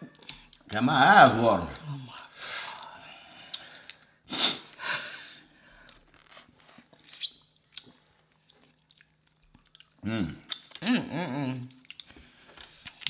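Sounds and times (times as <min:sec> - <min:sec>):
eating clicks and smacks: 0:07.0 - 0:10.8, 0:11.5 - 0:13.0.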